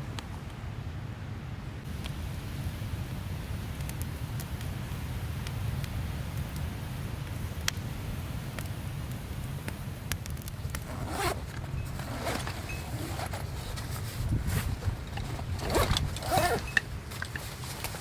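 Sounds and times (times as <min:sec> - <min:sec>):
zipper pulled: 0:10.7 - 0:16.8.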